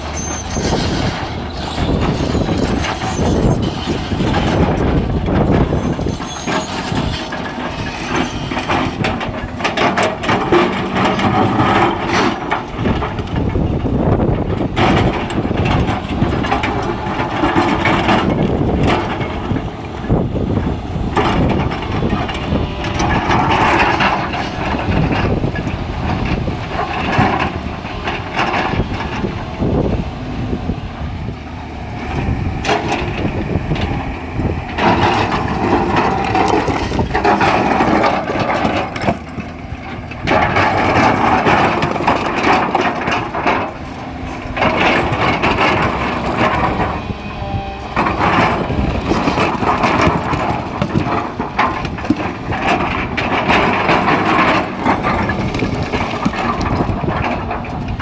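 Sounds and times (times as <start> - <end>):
excavator engine under load: 0.0 - 58.0.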